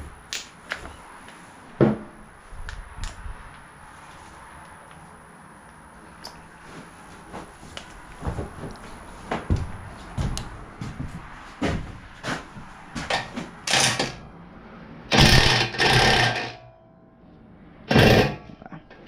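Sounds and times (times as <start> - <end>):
loud noisy bursts: 13.7 - 16.6.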